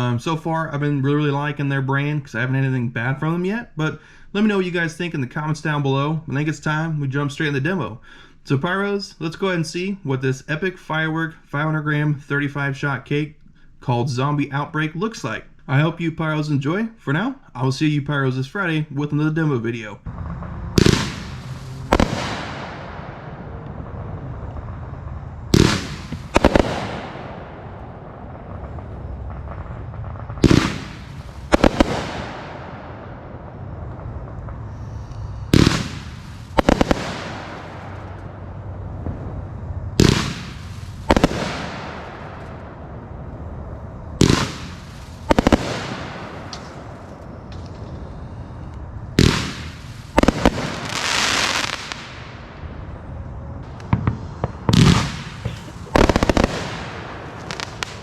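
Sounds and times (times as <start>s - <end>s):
firework crackle and rumble: 0.0s - 10.6s, 19.8s - 58.0s
firework bangs: 20.1s - 58.0s.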